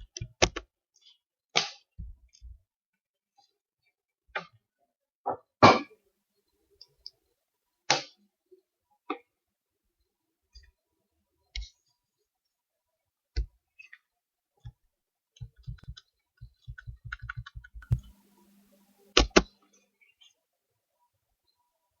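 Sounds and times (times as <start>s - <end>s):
sharp clicks and knocks: 15.4s - 18.2s.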